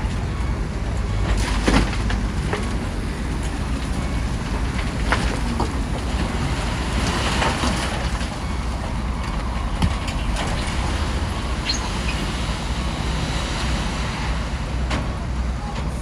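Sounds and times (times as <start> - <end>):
bulldozer diesel engine: 0.0 - 16.0.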